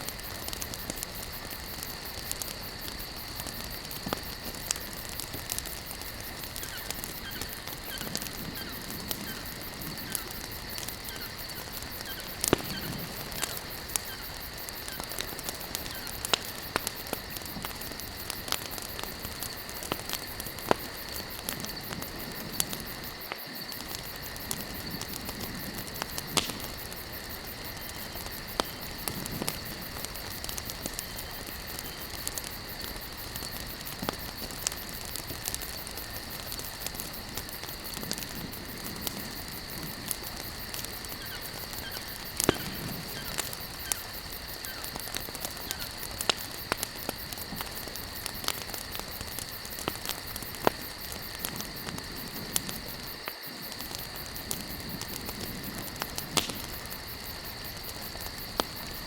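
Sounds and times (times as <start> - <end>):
campfire crackling and popping: 0.0 - 59.0
fire hiss: 0.0 - 59.0.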